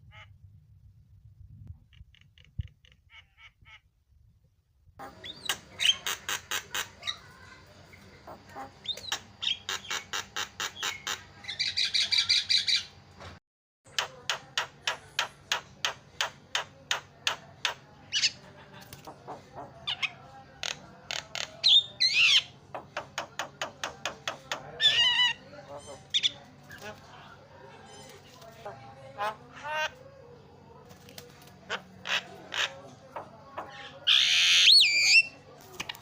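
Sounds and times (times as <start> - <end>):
bird clicking calls: 8.8 - 11.2.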